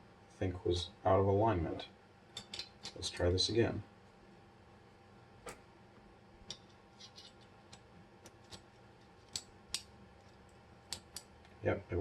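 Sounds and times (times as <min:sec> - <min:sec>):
small steel parts clicking: 0:02.4 - 0:03.0, 0:06.5 - 0:07.8.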